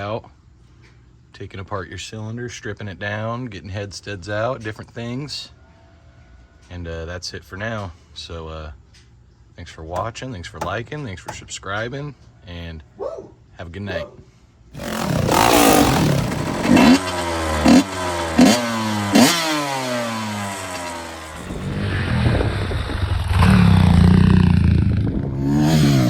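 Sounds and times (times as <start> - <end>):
motorcycle engine revving: 14.8 - 26.0.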